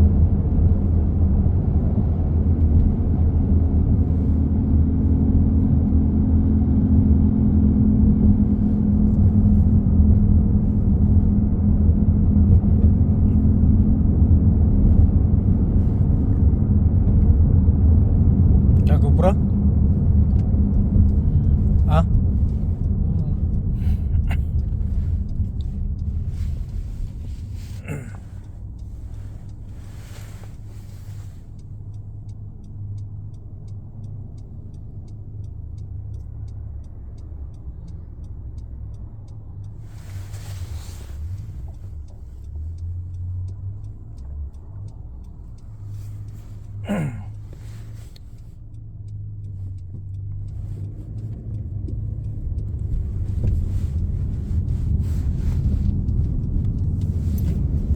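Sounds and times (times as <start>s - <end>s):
car humming drone: 0.0s - 57.9s
road noise hiss: 18.9s - 51.2s, 51.8s - 57.9s.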